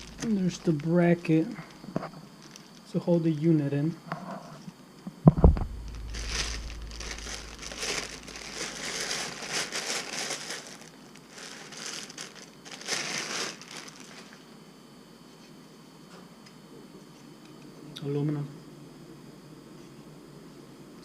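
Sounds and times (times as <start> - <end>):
packaging crinkling: 0.0 - 2.9, 5.4 - 14.5.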